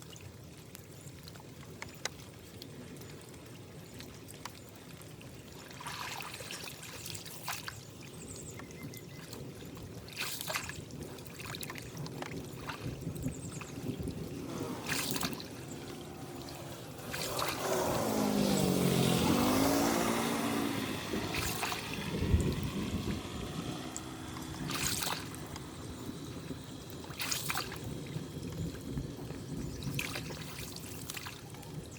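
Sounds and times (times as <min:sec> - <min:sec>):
water trickling through drain: 0:00.0 - 0:31.9
short sharp splashes: 0:05.6 - 0:07.9, 0:10.0 - 0:26.2, 0:27.0 - 0:28.6, 0:29.6 - 0:31.6
vehicle driving past: 0:14.3 - 0:26.9.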